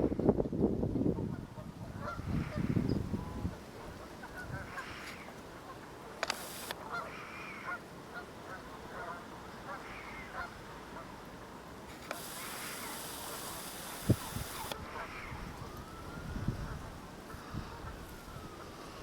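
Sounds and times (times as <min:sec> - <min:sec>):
geese honking: 0:01.2 - 0:15.7
hiss: 0:06.2 - 0:06.7, 0:11.9 - 0:14.8.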